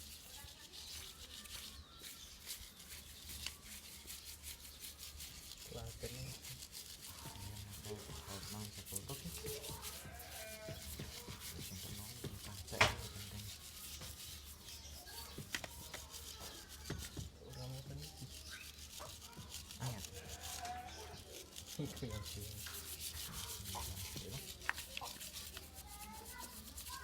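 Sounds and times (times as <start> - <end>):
stiff brush scrubbing metal parts: 0.0 - 27.0
sharp knock: 12.8 - 13.1.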